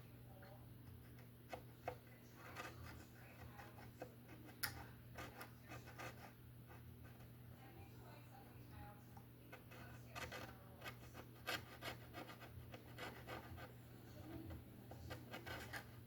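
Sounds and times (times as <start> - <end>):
low steady hum: 0.0 - 16.0
chisel scraping wood: 1.0 - 4.6, 9.5 - 16.0.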